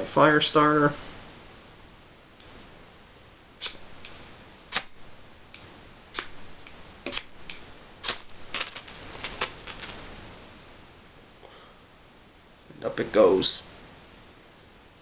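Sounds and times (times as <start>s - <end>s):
fire steel scraping: 7.1s - 10.3s.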